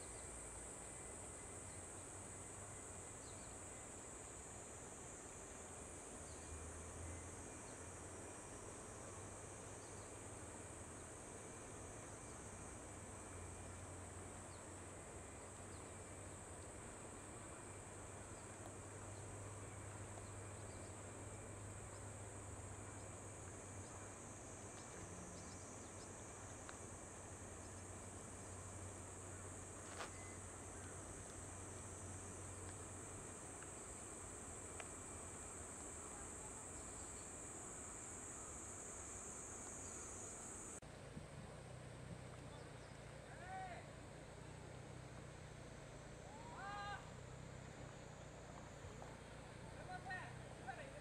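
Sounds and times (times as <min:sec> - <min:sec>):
insects chirring: 0:00.0 - 0:40.8.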